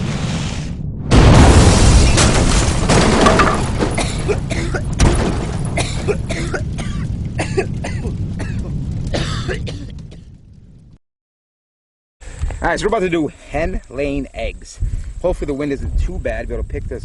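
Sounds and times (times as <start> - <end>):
firework blast rumble: 0.0 - 11.0.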